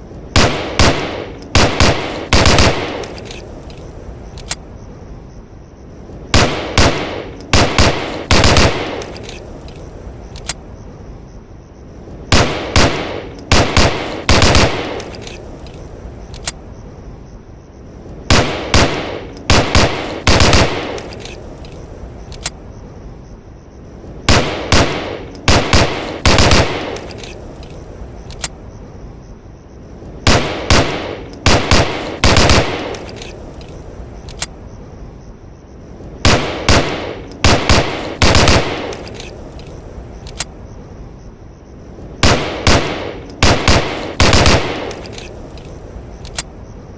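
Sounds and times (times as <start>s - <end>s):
pistol shots with echo: 36.2s - 39.0s, 42.2s - 45.0s.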